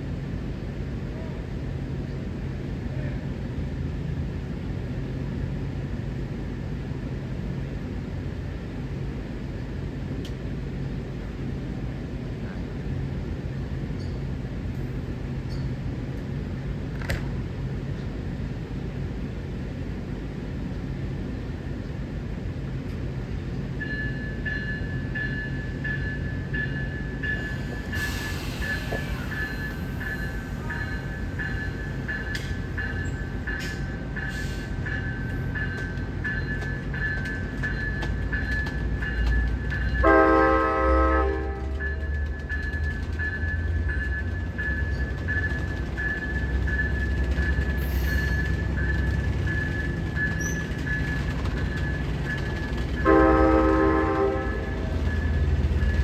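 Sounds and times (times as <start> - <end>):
train low rumble: 0.0 - 56.0
railroad crossing bell ringing: 23.7 - 56.0
train horn blast: 40.0 - 41.9, 53.0 - 55.1.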